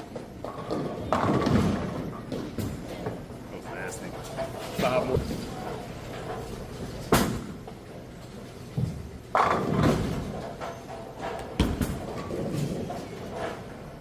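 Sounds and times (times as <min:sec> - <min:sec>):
bowling balls striking pins: 0:00.1 - 0:03.3, 0:08.7 - 0:13.7.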